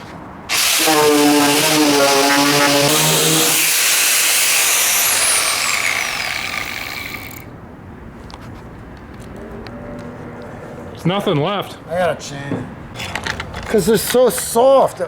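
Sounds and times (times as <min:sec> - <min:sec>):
motor hum: 0:00.5 - 0:07.5
power sanders grinding paint: 0:00.5 - 0:07.5
tool spinning down whine: 0:00.5 - 0:07.5.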